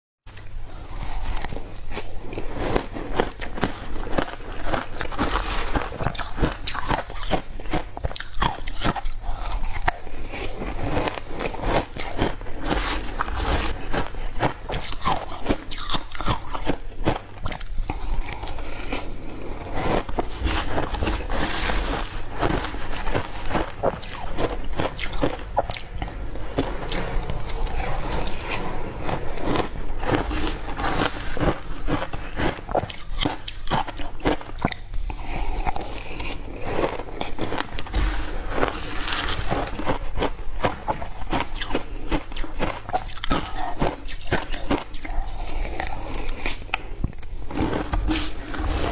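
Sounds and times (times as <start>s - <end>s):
ice crunching between teeth: 0.4s - 48.9s.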